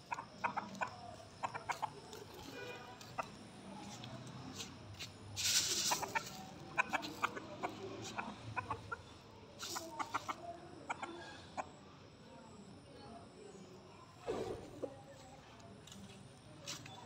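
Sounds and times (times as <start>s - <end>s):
chickens clucking: 0.0s - 4.8s, 5.4s - 12.1s.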